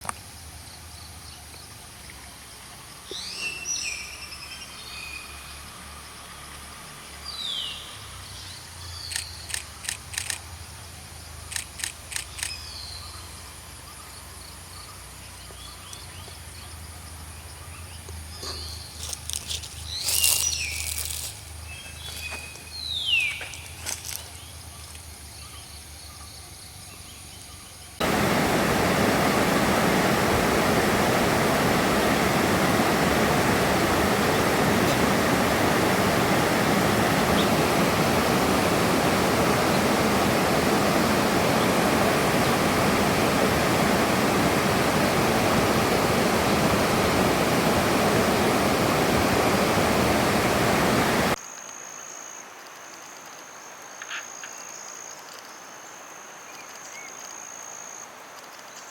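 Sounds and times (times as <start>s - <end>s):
rushing water roar: 28.0s - 51.4s.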